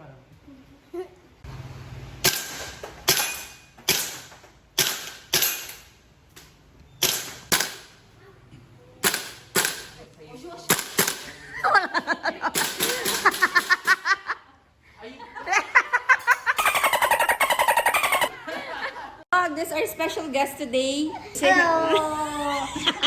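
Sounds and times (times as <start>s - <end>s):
voices: 18.3s - 23.0s.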